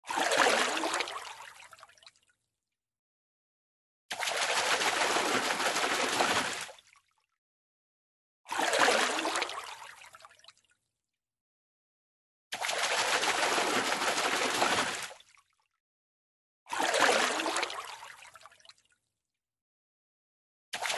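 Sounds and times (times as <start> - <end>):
fish splashing in water: 0.0 - 1.3, 4.1 - 7.0, 8.5 - 10.0, 12.6 - 15.4, 16.8 - 18.2.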